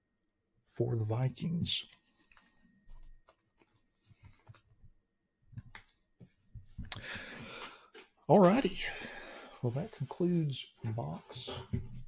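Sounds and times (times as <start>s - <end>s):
cards rustling: 1.8s - 4.8s.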